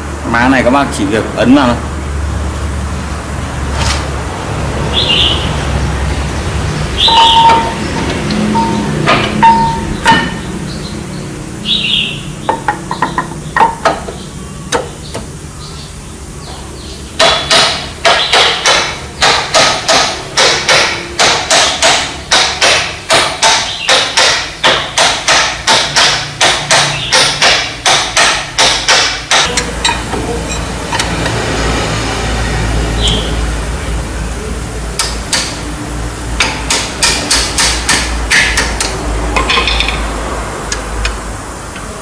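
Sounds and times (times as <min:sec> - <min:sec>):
hammer blows on metal: 0:07.0 - 0:10.5.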